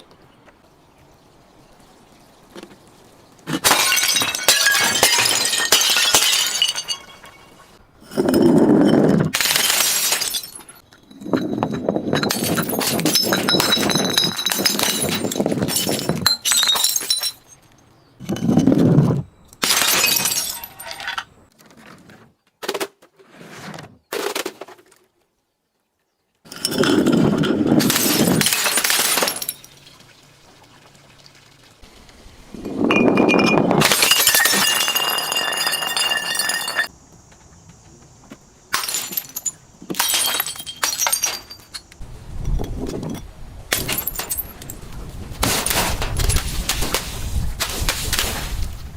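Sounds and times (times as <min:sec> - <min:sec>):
glass bottles breaking: 0:03.5 - 0:17.7, 0:19.6 - 0:21.3, 0:26.5 - 0:30.0, 0:32.6 - 0:36.9, 0:38.7 - 0:41.9, 0:43.7 - 0:44.8.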